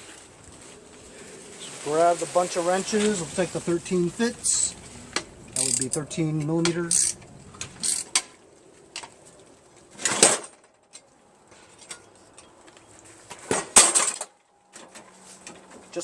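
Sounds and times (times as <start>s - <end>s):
wrench rasping: 5.6s - 6.0s, 6.8s - 7.2s, 7.8s - 8.1s.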